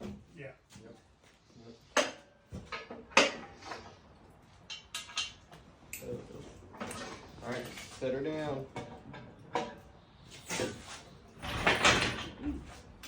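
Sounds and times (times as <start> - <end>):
metal clanks and rattles: 2.0 - 3.9, 4.6 - 9.9, 11.4 - 13.0.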